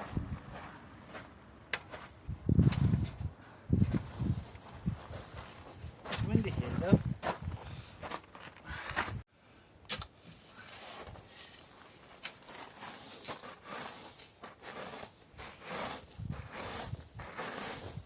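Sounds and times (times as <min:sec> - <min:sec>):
wind gusting: 0:00.0 - 0:00.7, 0:02.2 - 0:08.1.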